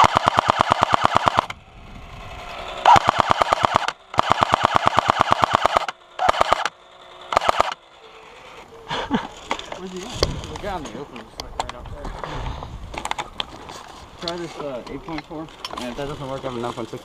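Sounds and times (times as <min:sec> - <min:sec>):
airsoft gun firing bursts: 0:00.0 - 0:01.6, 0:02.8 - 0:06.7, 0:07.3 - 0:07.8
gearbox whine: 0:00.0 - 0:17.0.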